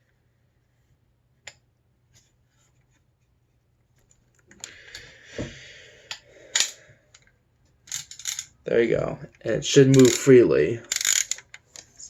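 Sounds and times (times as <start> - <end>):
film spool scraping and clicking: 9.9 - 10.3, 10.9 - 12.0.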